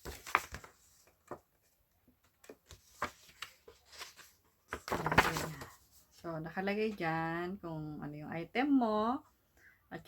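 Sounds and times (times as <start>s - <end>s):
paper rustling: 0.0s - 6.1s.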